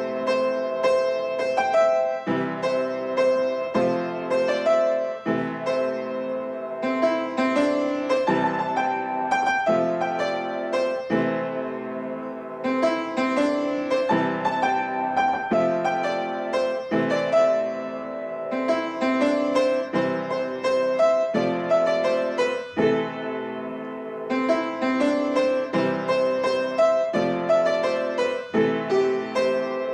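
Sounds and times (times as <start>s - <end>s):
gentle piano music: 0.0s - 29.9s.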